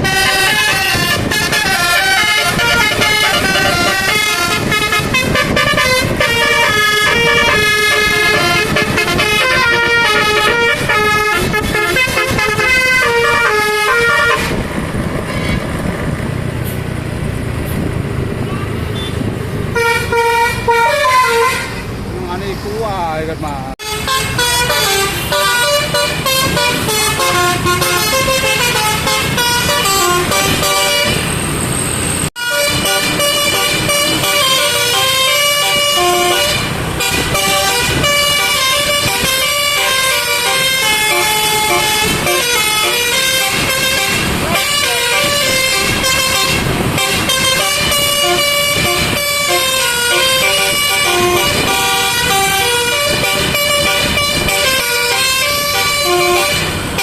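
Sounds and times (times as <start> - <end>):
musical truck air horn tune: 0.0 - 14.6, 19.8 - 21.9, 23.8 - 31.4, 32.4 - 57.0.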